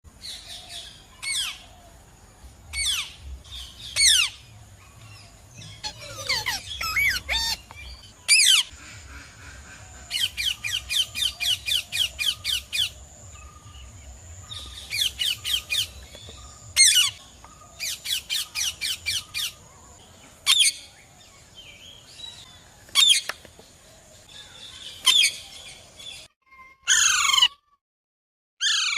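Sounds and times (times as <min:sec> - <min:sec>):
parrots squawking: 0:05.6 - 0:13.0, 0:26.9 - 0:27.6, 0:28.6 - 0:28.9.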